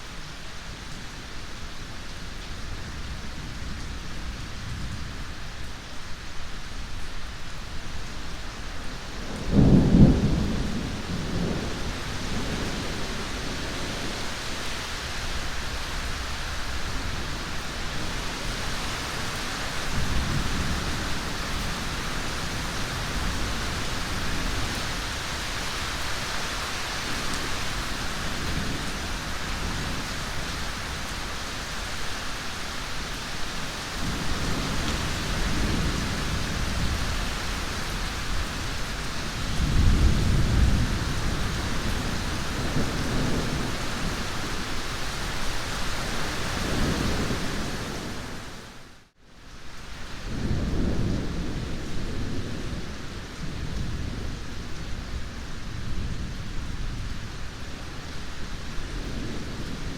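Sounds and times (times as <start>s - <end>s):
heavy rain: 0.0s - 59.9s
thunder clap and rumble: 9.2s - 14.1s, 34.0s - 44.7s.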